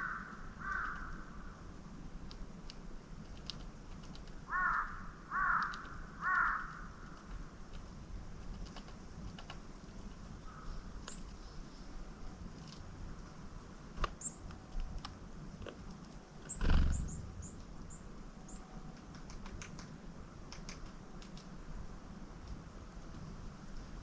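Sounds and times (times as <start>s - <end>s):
songbirds high thin calls: 14.1s - 14.5s, 16.4s - 18.8s.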